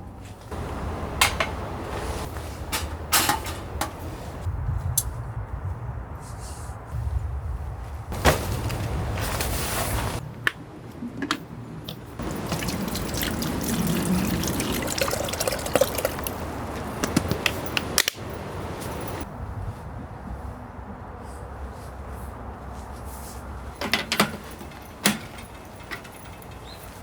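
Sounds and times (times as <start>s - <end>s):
liquid pouring and splashing: 12.2s - 17.0s.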